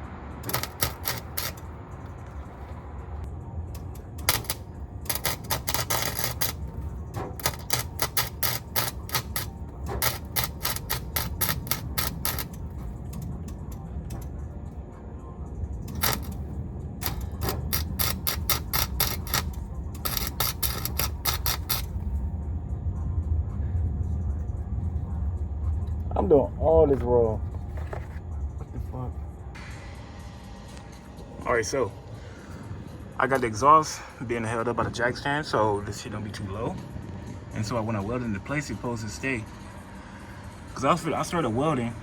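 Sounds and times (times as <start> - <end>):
welder arc crackling: 0.4 - 2.9, 3.8 - 14.4, 15.8 - 22.2.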